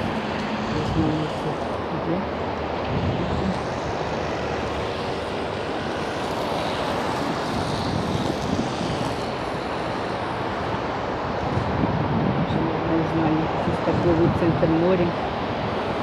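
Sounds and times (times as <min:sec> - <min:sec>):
road traffic passing: 0:00.0 - 0:16.0.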